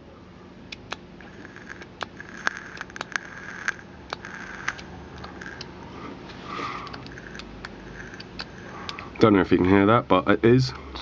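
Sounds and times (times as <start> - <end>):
sharp crackling clicks: 0.7 - 5.8, 6.8 - 9.2
faint coil sizzling: 0.7 - 10.0.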